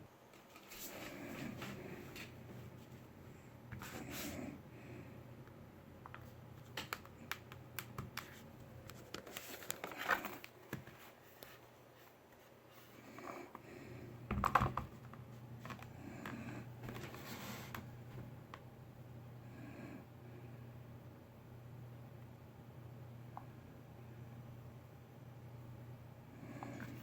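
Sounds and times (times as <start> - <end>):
scratching handling noise: 7.8 - 13.6.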